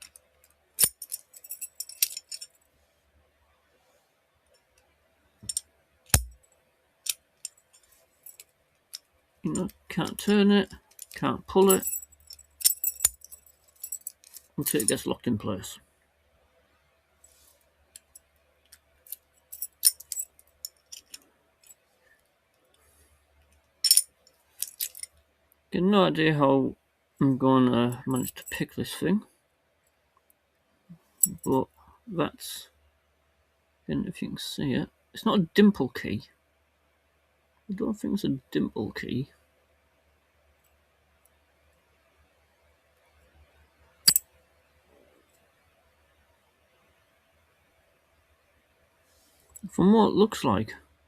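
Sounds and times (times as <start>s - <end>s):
padlock metallic clicks: 0.8s - 2.4s
padlock clacking: 0.8s - 2.5s, 5.4s - 6.4s, 10.9s - 15.0s.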